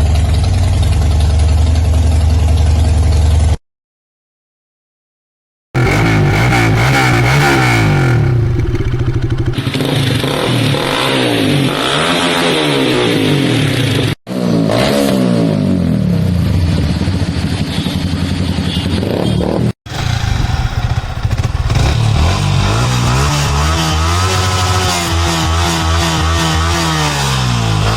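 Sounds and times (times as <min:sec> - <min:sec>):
motorcycle engine revving: 0:05.8 - 0:27.9.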